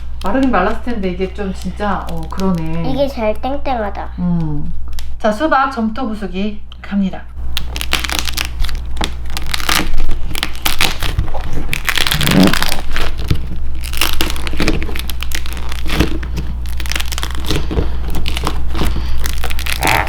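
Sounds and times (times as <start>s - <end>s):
clay crackling and crunching: 0.0s - 3.3s, 7.4s - 20.0s.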